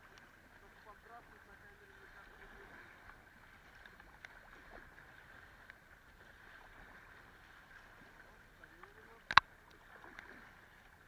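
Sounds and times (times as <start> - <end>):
river water rushing: 0.0 - 11.0
faint clicks: 3.6 - 4.5, 8.9 - 10.9.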